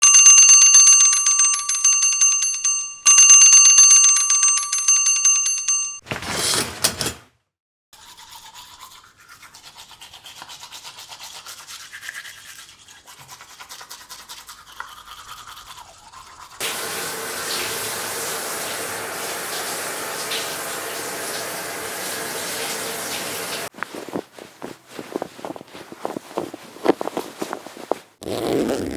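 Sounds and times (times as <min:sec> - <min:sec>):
bell ringing rapidly: 0:00.0 - 0:07.1.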